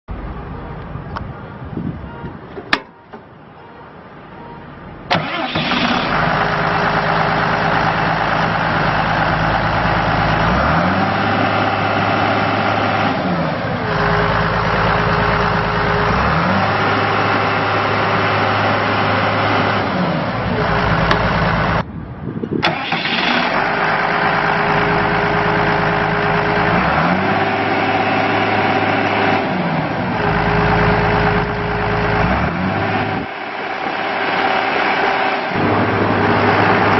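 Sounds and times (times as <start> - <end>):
diesel engine running: 0.1 - 36.9.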